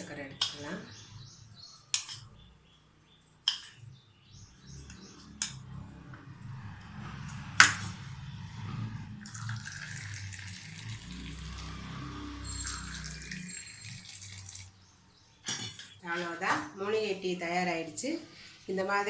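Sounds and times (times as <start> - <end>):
liquid pouring: 9.2 - 11.9, 12.5 - 14.7
spoon clinking against vessel: 12.5 - 14.6.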